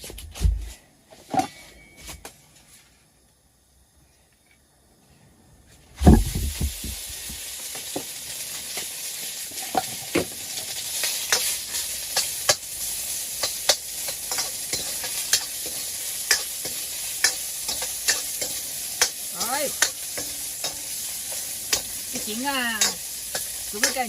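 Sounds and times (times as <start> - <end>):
food sizzling in hot oil: 6.0 - 24.0.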